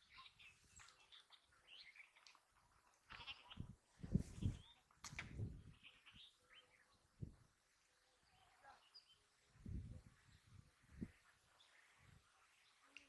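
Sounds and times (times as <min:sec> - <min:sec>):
bleat-like animal call: 0:03.1 - 0:03.7.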